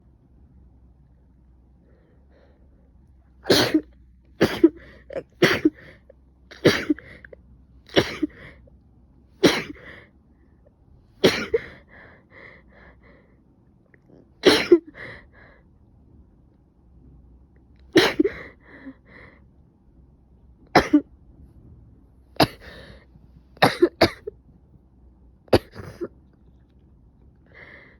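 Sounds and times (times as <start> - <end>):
person coughing and sneezing: 3.4 - 7.3, 7.9 - 8.6, 9.4 - 9.9, 11.2 - 11.8, 14.4 - 15.1, 17.9 - 18.6, 20.7 - 21.1, 22.4 - 22.9, 23.6 - 24.4, 25.5 - 26.2.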